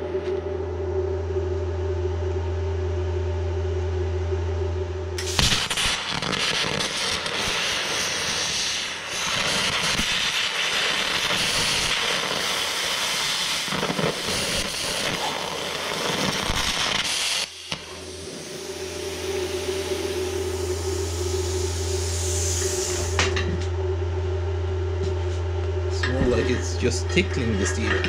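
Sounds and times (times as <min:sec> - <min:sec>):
plasma cutter arc hissing: 0:05.2 - 0:23.2.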